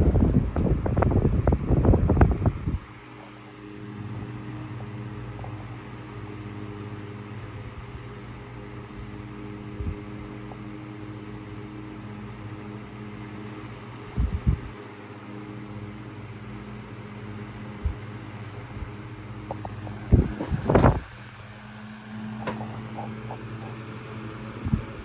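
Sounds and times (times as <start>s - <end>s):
table fan running: 0.0s - 25.0s
low thumps: 19.5s - 21.4s.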